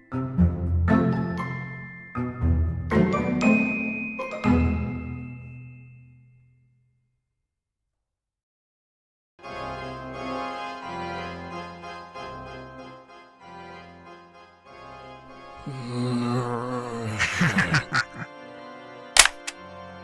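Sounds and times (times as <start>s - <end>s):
organ music: 0.0s - 5.7s, 9.5s - 15.7s
sharp clicks: 19.2s - 19.6s.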